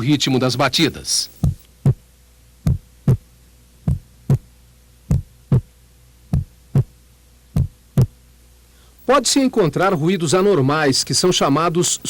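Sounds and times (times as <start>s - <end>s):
heartbeat lub-dub: 1.4s - 4.5s, 5.1s - 8.2s.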